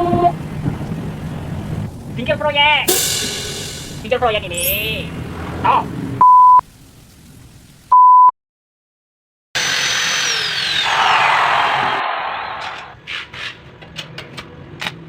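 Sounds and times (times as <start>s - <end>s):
electronic censor beep: 6.2s - 6.6s.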